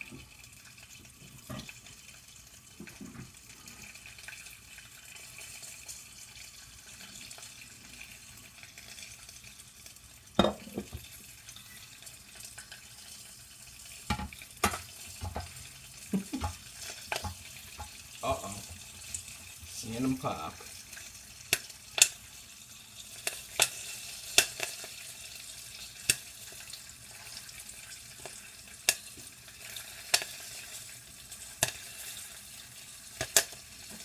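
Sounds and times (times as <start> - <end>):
butter sizzling in a pan: 0.0 - 34.0
popcorn kernels popping: 23.2 - 24.8, 33.2 - 34.0.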